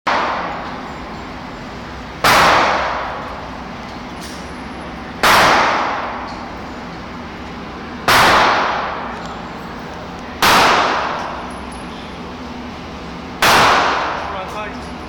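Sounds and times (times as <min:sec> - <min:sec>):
revolver shots with echo: 0:02.2 - 0:03.3, 0:05.2 - 0:06.3, 0:08.0 - 0:09.2, 0:10.4 - 0:11.4, 0:13.4 - 0:14.3.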